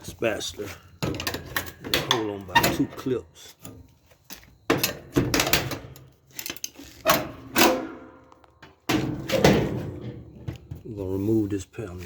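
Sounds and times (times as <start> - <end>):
metal panel clanking and rattling: 1.0 - 3.1, 4.7 - 10.8.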